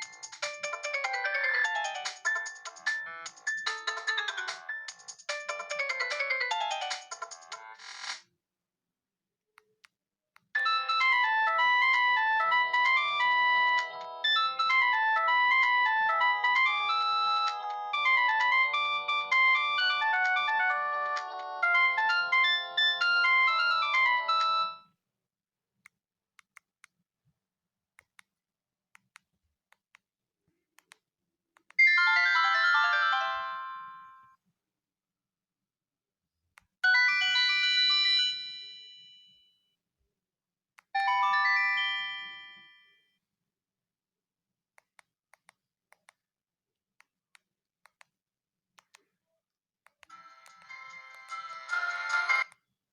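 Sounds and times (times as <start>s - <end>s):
phone ringtone melody: 0.0s - 7.8s, 10.6s - 24.9s, 31.8s - 34.3s, 36.8s - 39.4s, 41.0s - 42.9s, 50.1s - 52.5s.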